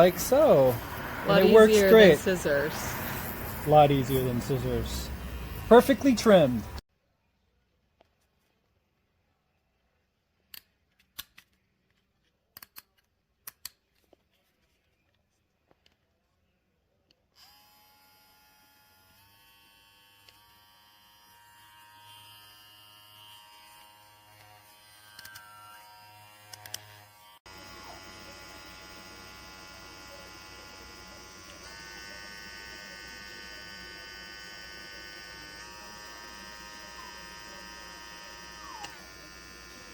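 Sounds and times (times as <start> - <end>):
electric clippers buzzing: 0.0 - 6.8, 17.4 - 39.9.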